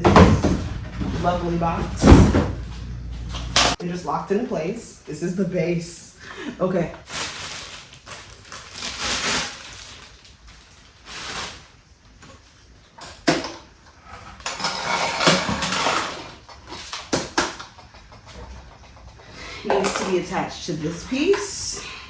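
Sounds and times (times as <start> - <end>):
plastic packaging crinkling: 6.7 - 12.5.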